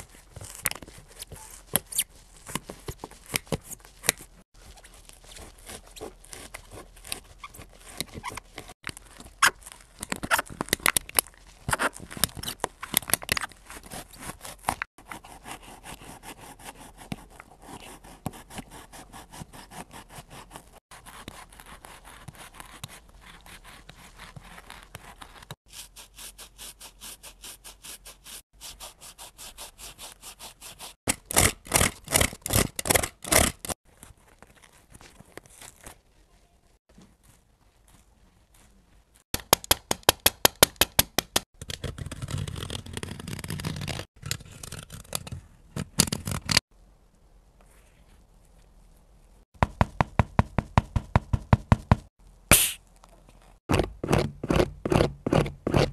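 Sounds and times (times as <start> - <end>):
shoe materials scraped and torn: 0.0 - 36.1, 41.7 - 46.6, 52.5 - 55.9.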